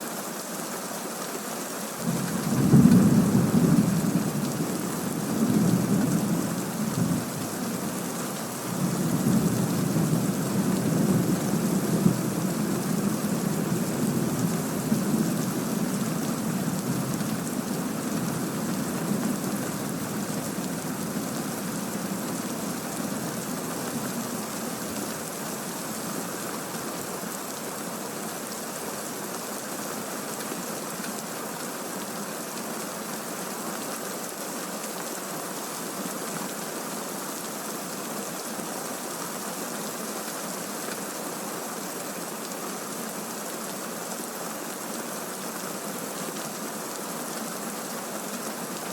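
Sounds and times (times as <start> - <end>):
heavy rain hissing: 1.9 - 31.0.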